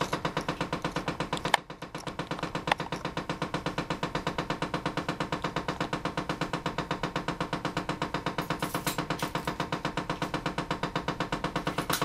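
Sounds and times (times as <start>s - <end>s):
sharp clicks: 0.0s - 6.6s
actuator motor knocking rapidly: 0.0s - 12.0s.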